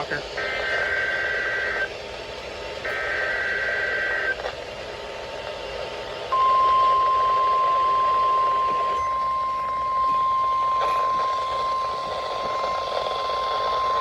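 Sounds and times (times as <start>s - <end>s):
constant radio hiss: 0.0s - 14.0s
loud steady alert tone: 6.3s - 14.0s.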